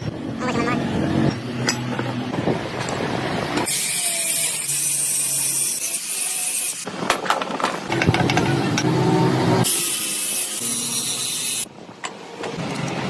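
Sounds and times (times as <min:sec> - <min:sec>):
power tool high-pitched hiss: 0:09.7 - 0:11.7.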